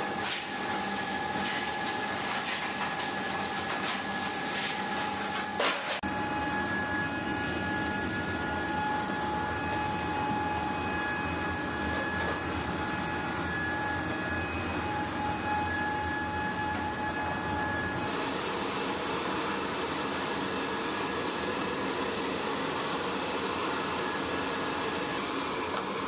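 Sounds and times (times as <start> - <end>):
high whine: 0.0 - 18.1
jet engines roaring: 0.0 - 18.1.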